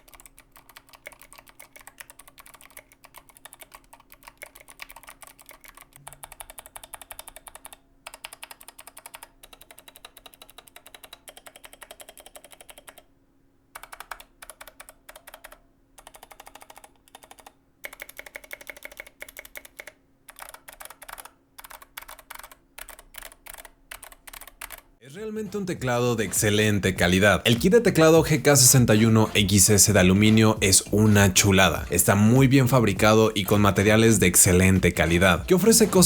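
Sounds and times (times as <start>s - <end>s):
fast typing on mechanical keyboard: 0.0s - 13.1s, 13.8s - 24.9s.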